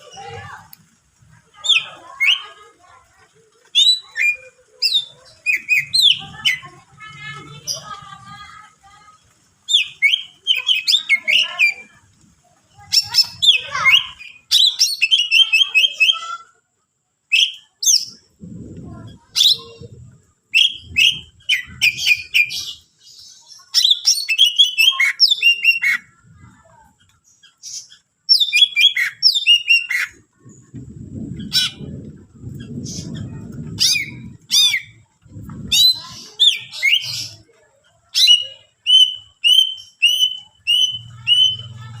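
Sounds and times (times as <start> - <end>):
bird singing high chirps: 9.7 - 11.9, 20.5 - 26.0, 27.4 - 30.1, 38.1 - 42.0.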